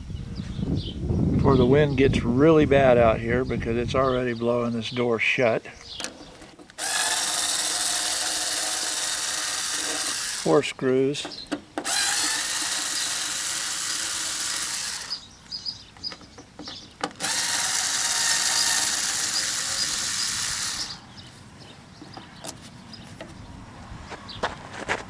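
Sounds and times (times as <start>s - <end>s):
power drill driving screws: 6.0s - 10.6s, 11.5s - 15.3s, 17.0s - 21.1s.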